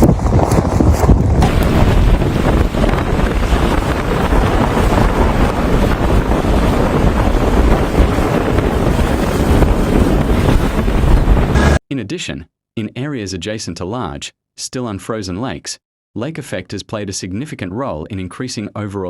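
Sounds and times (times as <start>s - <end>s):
wind buffeting microphone: 0.0s - 11.8s.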